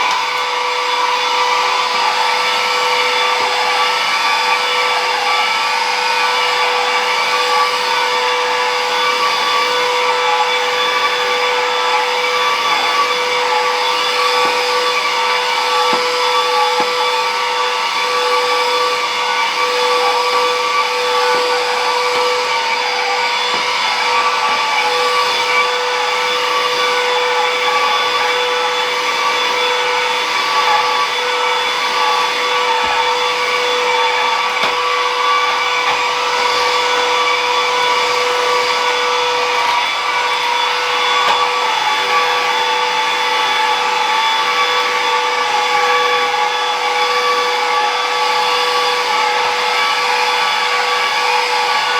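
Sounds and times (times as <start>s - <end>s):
vacuum cleaner whining: 0.0s - 51.9s.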